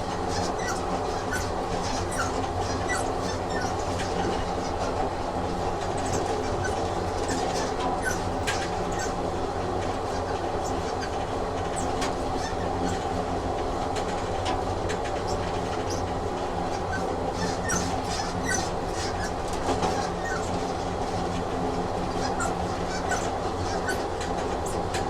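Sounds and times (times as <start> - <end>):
train rumbling on track: 0.0 - 25.0
wheels squeaking: 15.2 - 21.3.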